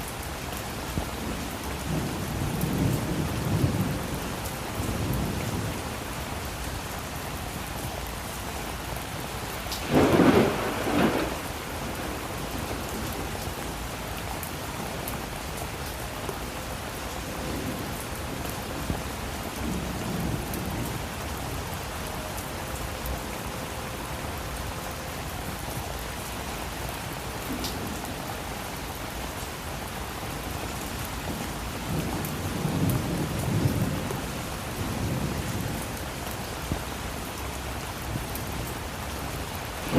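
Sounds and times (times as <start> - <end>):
steady rain: 0.0 - 39.9
rumbles of thunder: 1.0 - 6.0, 9.7 - 13.7, 17.4 - 21.5, 30.5 - 36.0
sharp thunderclap: 9.8 - 11.6.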